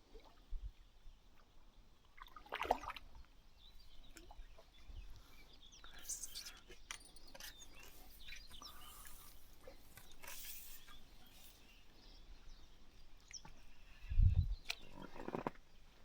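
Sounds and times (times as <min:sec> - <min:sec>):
faint bird chirps: 0:03.6 - 0:15.2
rustle: 0:06.0 - 0:12.3.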